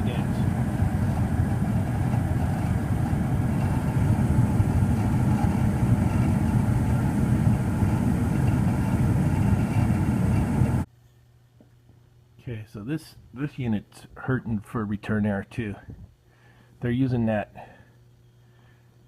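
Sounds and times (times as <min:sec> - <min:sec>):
furnace flame and blower rumble: 0:00.0 - 0:10.9.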